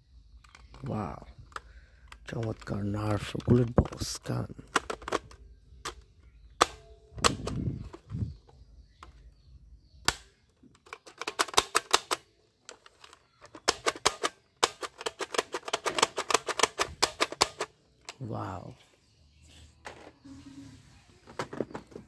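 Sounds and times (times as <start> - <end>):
toy gun plastic clicking: 0.3 - 7.7, 10.0 - 18.2.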